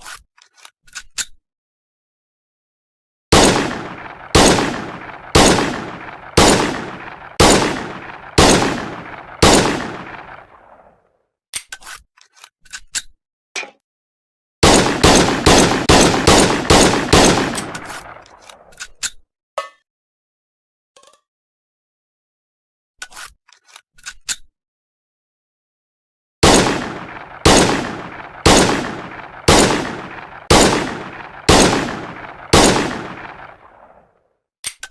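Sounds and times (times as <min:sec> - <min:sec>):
pistol shots with echo: 0:03.3 - 0:10.9, 0:14.6 - 0:18.4, 0:26.4 - 0:34.0
gun clicks: 0:03.4 - 0:10.9, 0:14.6 - 0:19.2, 0:26.4 - 0:34.0.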